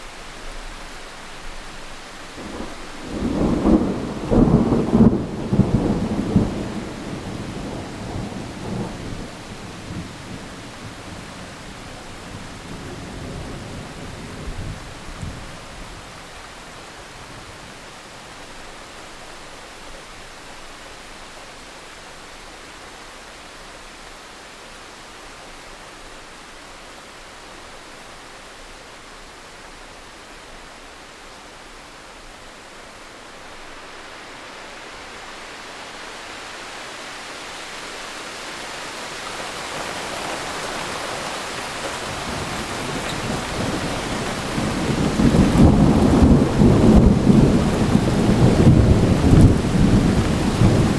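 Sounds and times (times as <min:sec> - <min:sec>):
steady rain: 0:00.0 - 0:50.9
thunder rumbling: 0:02.4 - 0:16.0, 0:39.8 - 0:50.9.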